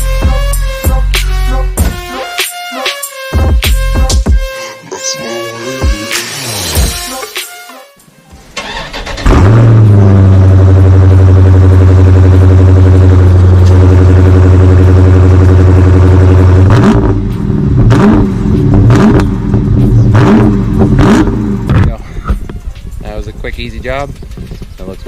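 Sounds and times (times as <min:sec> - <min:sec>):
car engine starting and idling: 0:08.1 - 0:22.6
engine revving: 0:08.6 - 0:22.0.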